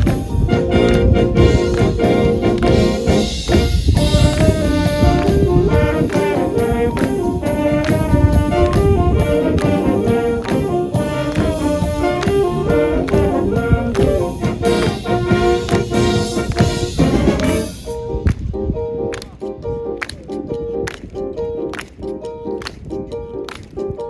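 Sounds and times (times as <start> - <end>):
marching drum beat: 0.0 - 17.9
brass carrying the tune: 0.0 - 18.2
marching band playing: 0.0 - 18.3.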